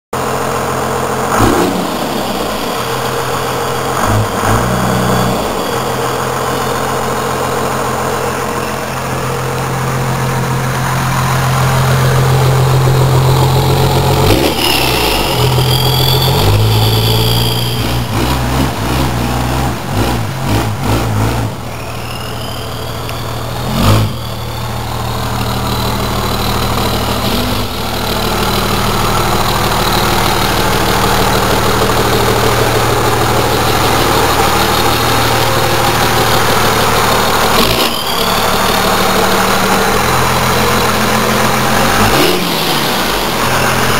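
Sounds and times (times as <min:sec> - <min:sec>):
diesel engine idling and revving: 0:00.1 - 0:43.9
turbo whistle: 0:01.4 - 0:09.6, 0:14.3 - 0:18.4, 0:21.5 - 0:40.3.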